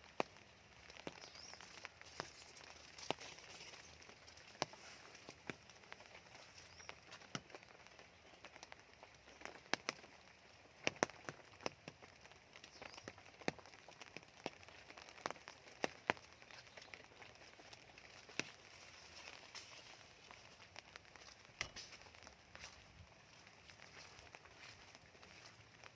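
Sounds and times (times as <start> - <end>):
raindrops dripping: 0.0 - 25.9
soft steady hiss: 0.0 - 25.9.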